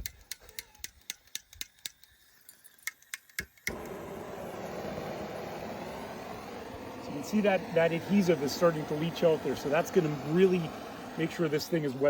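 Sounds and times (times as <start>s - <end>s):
gas torch igniter clicking: 0.0s - 2.2s, 2.8s - 11.7s
torch flame rushing: 3.6s - 12.0s.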